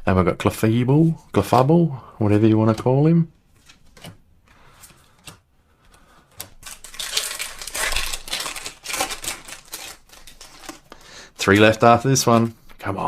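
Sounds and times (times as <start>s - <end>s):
foil wrapper crinkling and tearing: 6.5s - 11.0s.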